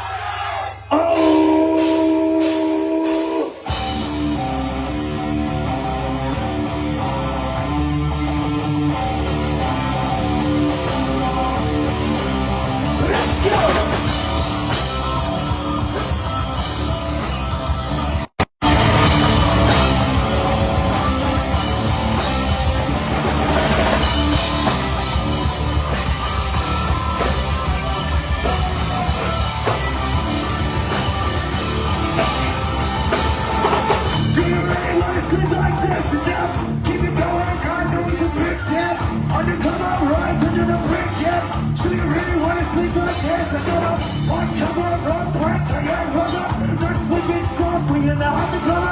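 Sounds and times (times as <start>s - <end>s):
person singing: 0.8s - 3.6s, 12.8s - 24.8s, 26.4s - 48.9s
rock band playing: 0.9s - 48.9s.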